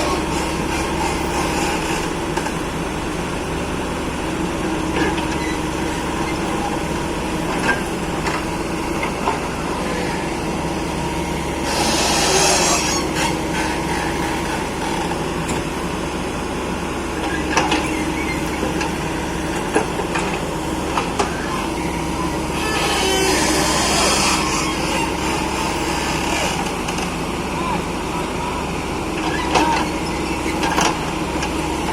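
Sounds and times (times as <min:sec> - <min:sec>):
hydraulic hissing: 0:00.0 - 0:14.2
excavator diesel engine running: 0:00.0 - 0:31.9.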